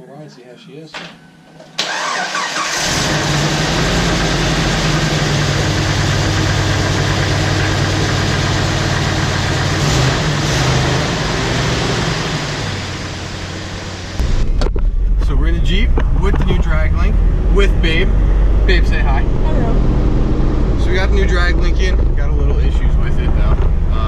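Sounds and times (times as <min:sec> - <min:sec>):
car engine idling: 0:01.8 - 0:19.8.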